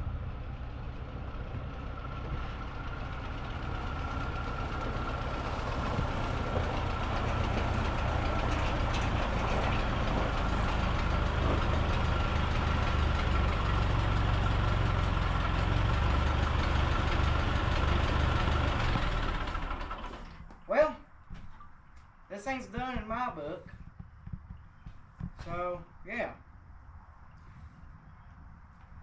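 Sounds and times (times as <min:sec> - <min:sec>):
tractor engine running: 0:00.0 - 0:21.0.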